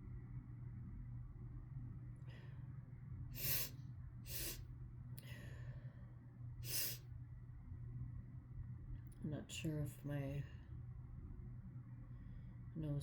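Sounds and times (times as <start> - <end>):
person sniffing and snorting: 3.4 - 3.7, 4.3 - 4.6, 6.7 - 7.0
soft exhale: 3.4 - 4.6, 6.6 - 7.0.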